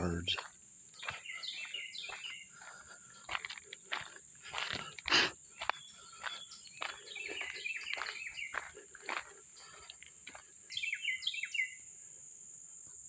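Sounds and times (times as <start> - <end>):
birds chirping: 0.0 - 11.8
insects droning: 0.0 - 13.0
footsteps crunching through leaves: 0.3 - 10.5.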